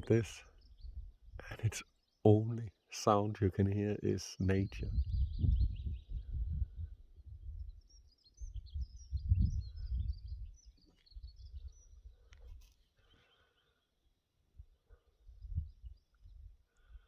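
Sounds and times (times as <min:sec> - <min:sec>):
wind buffeting microphone: 0:04.7 - 0:12.2, 0:15.3 - 0:17.0
small bird chirping: 0:04.8 - 0:13.9.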